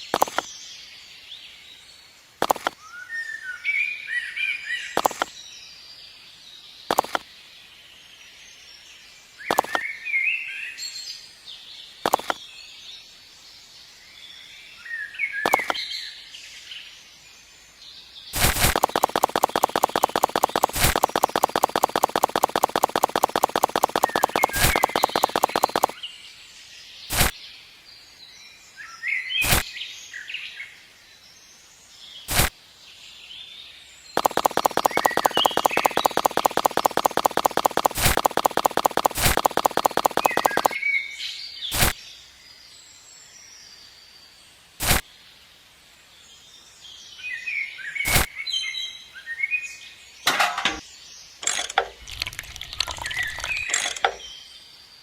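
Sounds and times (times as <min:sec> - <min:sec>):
sharp single clicks: 0:02.4 - 0:02.8, 0:05.0 - 0:05.3, 0:06.9 - 0:07.2, 0:09.5 - 0:09.8, 0:12.0 - 0:12.4, 0:15.4 - 0:15.8, 0:18.4 - 0:26.0, 0:34.2 - 0:40.8
birds chirping: 0:09.5 - 0:10.0, 0:14.9 - 0:16.0, 0:18.3 - 0:26.1, 0:34.2 - 0:42.0, 0:50.2 - 0:54.7
loud pulsing mechanical rattle: 0:18.4 - 0:26.0, 0:34.2 - 0:40.8.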